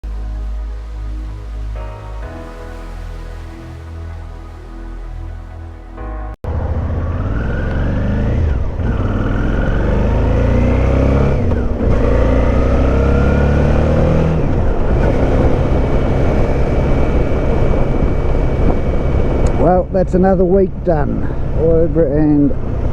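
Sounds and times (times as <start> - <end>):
music: 0.0 - 6.4
wind rush: 1.1 - 22.9
motorcycle engine accelerating: 6.4 - 22.9.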